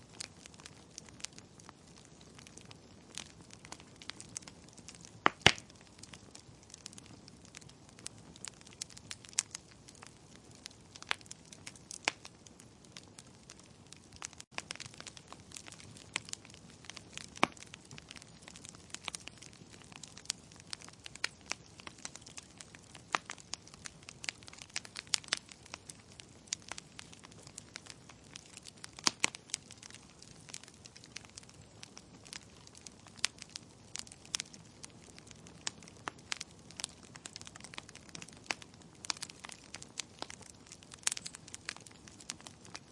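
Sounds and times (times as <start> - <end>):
soft hiss of burning logs: 0.0 - 42.9
wood fire crackling and popping: 0.0 - 42.9.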